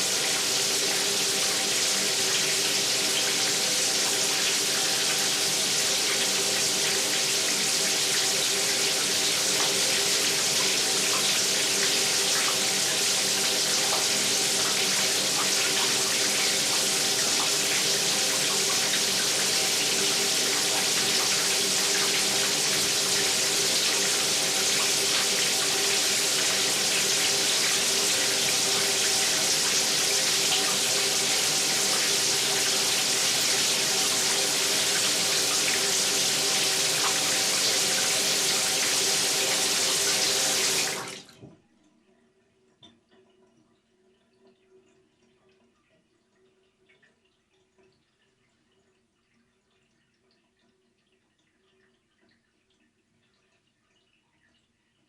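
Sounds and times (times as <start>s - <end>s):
water running from a tap: 0.0s - 41.4s.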